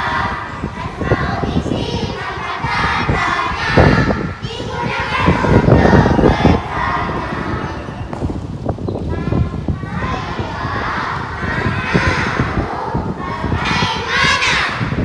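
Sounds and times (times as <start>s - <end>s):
children chattering and singing: 0.0s - 15.0s
heavy thuds: 8.0s - 9.7s.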